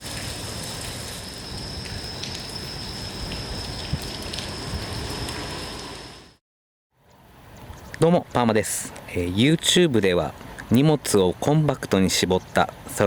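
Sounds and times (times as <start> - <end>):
steady rain falling: 0.0 - 6.4.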